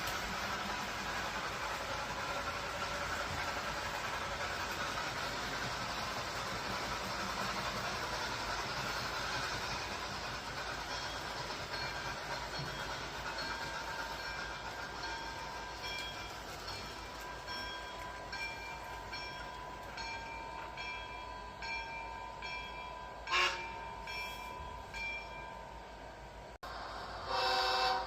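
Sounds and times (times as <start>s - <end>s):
train running: 0.0s - 28.0s
train horn blast: 23.3s - 23.8s, 27.2s - 28.0s.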